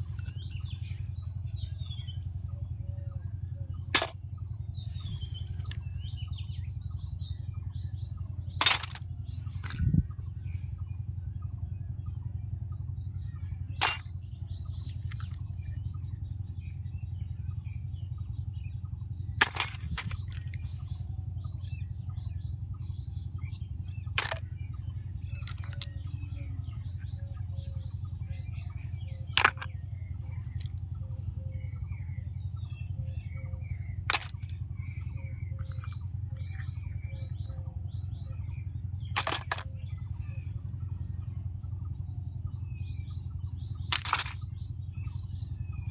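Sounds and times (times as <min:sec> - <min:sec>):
birds chirping: 0:00.0 - 0:45.9
steady low hum: 0:00.0 - 0:45.9
plastic toy pieces clicking: 0:39.2 - 0:39.6.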